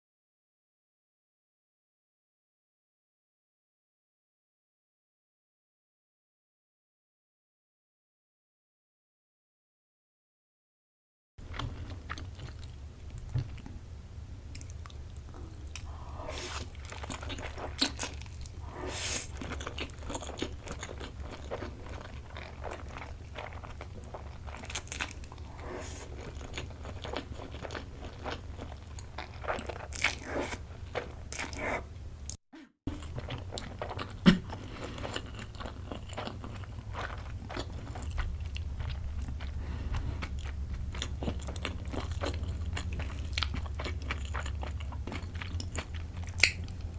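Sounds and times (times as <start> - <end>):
steady low hum: 11.4 - 46.9
chewing and wet mouth sounds: 11.5 - 13.8, 14.5 - 46.9.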